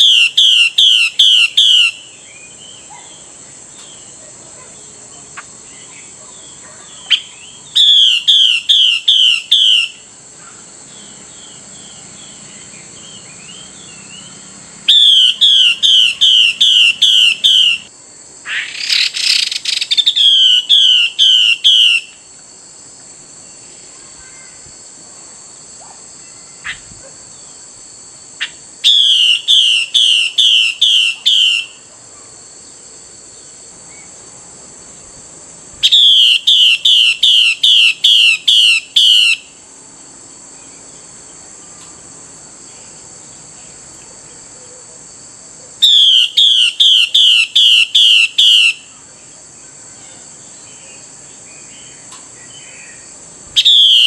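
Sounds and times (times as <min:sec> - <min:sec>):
steady high hum: 0:00.0 - 0:53.9
bird calling sharp down-slurred notes: 0:45.8 - 0:48.9, 0:53.6 - 0:54.0.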